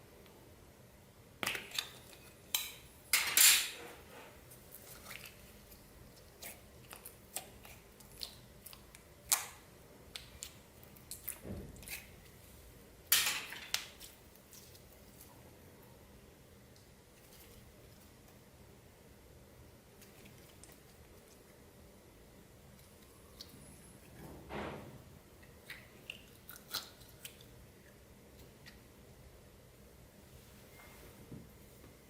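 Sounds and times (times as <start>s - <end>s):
slime crackling and popping: 6.2s - 12.2s.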